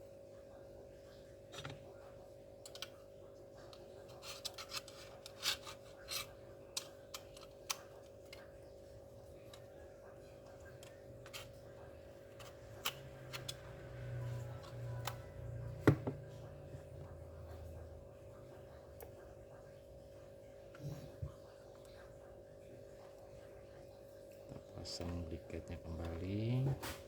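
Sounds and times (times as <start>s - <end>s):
laptop parts clicking: 2.7s - 3.0s, 4.1s - 8.5s, 12.3s - 14.0s.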